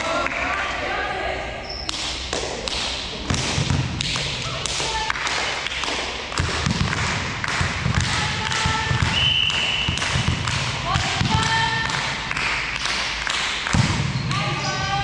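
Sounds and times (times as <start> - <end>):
volleyball being struck: 2.0 - 4.6, 6.4 - 12.2, 13.6 - 14.4.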